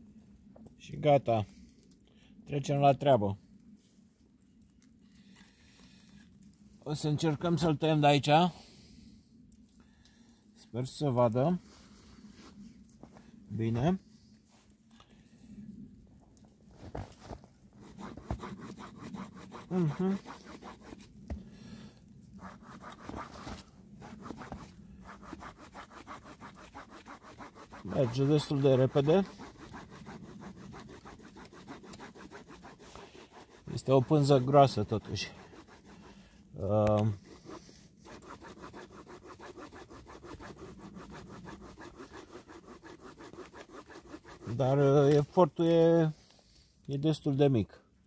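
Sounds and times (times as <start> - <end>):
saw cutting wooden stick: 17.8 - 21.1, 22.4 - 36.2, 36.8 - 45.2.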